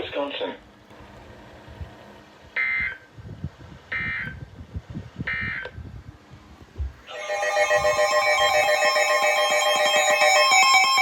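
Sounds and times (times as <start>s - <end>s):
buzzy data tone bursts: 7.1s - 11.0s
rhythmic held tones: 7.1s - 11.0s.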